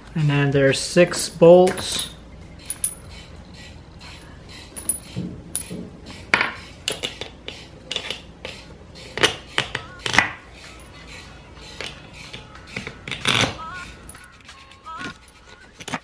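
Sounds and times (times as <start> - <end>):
steel bolts clinking: 1.7 - 7.2.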